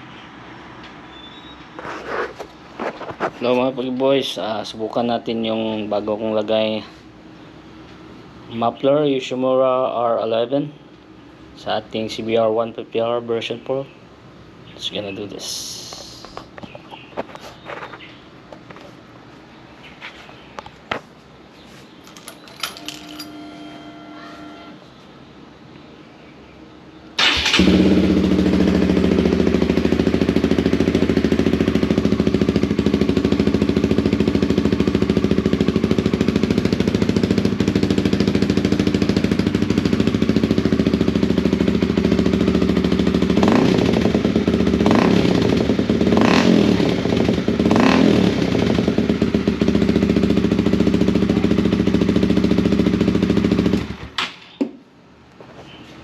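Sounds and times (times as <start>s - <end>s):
motorcycle engine idling and revving: 27.2s - 54.2s.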